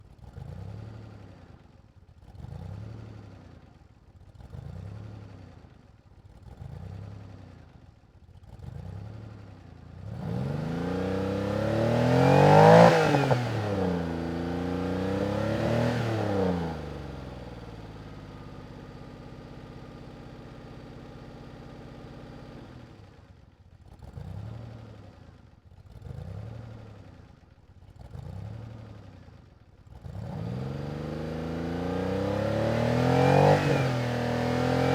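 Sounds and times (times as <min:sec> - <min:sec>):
car engine revving: 0:10.1 - 0:17.1, 0:30.0 - 0:34.9.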